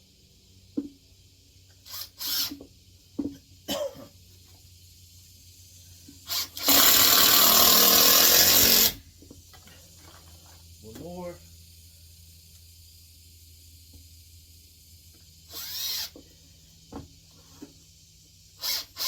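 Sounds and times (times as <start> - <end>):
power drill driving screw into wood: 1.8 - 2.7, 6.2 - 9.0, 15.4 - 16.2, 18.6 - 19.0.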